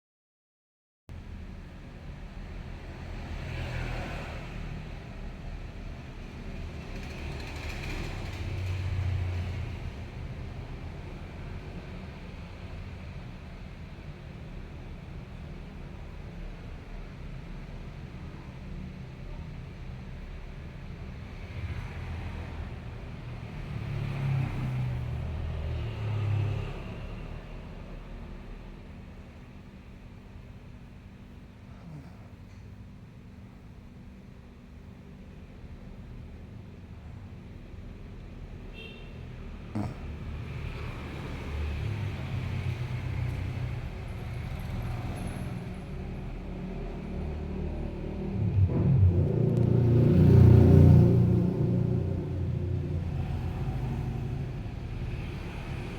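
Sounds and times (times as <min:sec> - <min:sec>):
man snoring: 0:31.7 - 0:32.4, 0:39.7 - 0:40.8.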